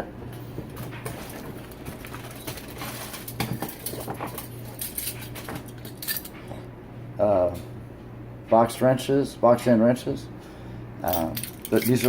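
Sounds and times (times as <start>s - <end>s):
tools clinking in a bag: 1.1s - 6.4s, 11.1s - 12.0s.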